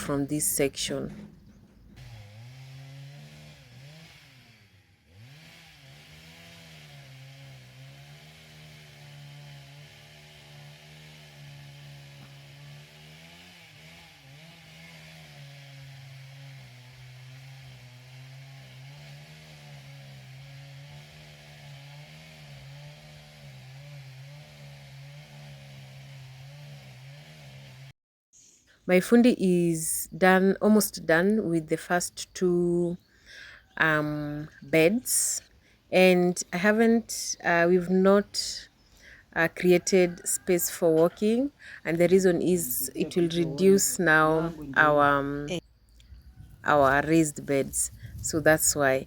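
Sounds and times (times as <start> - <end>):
faint chainsaw engine running: 0.0 - 27.9, 32.5 - 45.6.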